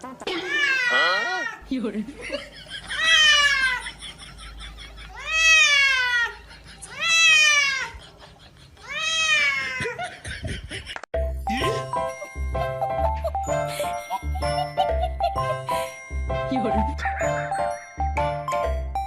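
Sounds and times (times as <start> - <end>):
cat meowing: 5.2 - 6.3, 6.9 - 7.9, 8.8 - 9.8.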